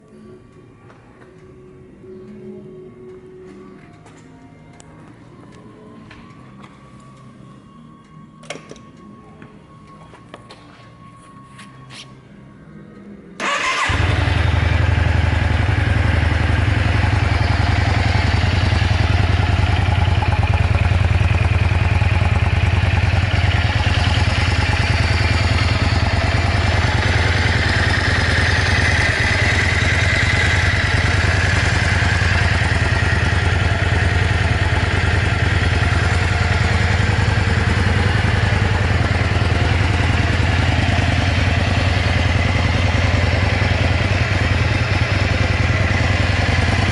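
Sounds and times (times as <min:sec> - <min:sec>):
electric starter cranking: 0:13.4 - 0:14.1
motorcycle engine idling: 0:13.4 - 0:46.9.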